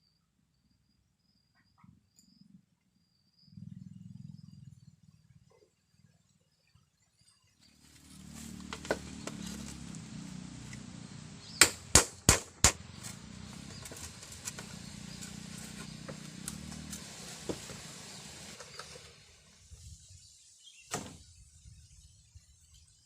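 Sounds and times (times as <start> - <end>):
steady hiss: 9.7 - 22.0
sharp knocks: 11.6 - 13.1.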